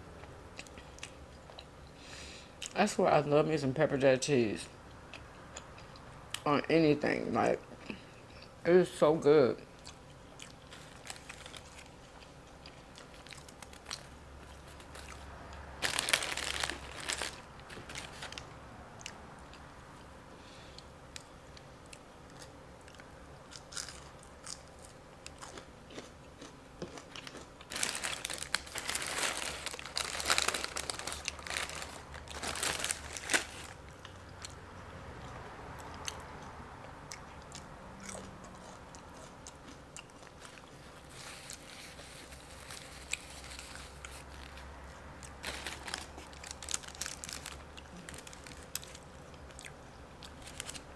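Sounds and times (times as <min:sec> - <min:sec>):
crunchy food being chewed: 0:00.2 - 0:01.9, 0:09.6 - 0:20.1, 0:20.8 - 0:34.6, 0:35.2 - 0:50.9.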